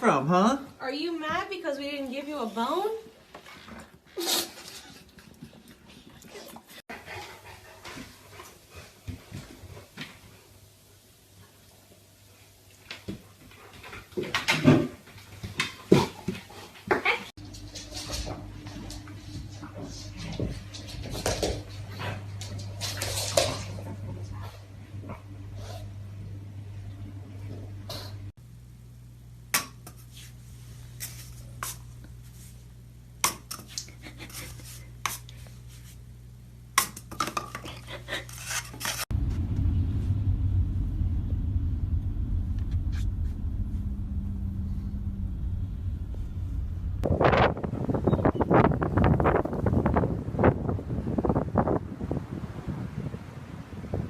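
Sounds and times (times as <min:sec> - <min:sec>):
steady low hum: 0:37.6 - 0:52.0.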